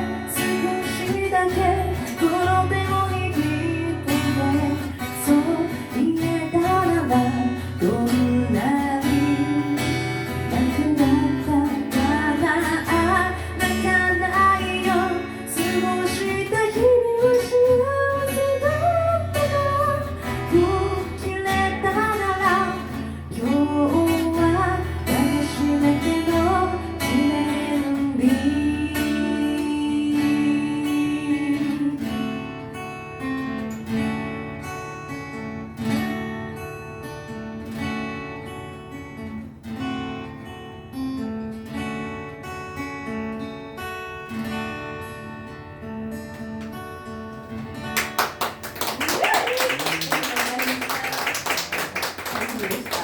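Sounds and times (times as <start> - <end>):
person singing: 0.0 - 9.8, 10.5 - 32.2
strummed acoustic guitar: 0.0 - 49.0.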